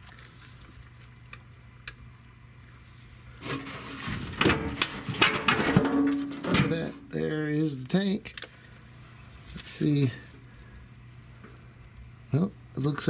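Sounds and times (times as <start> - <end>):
metal fuel tank scraping: 3.4 - 7.2.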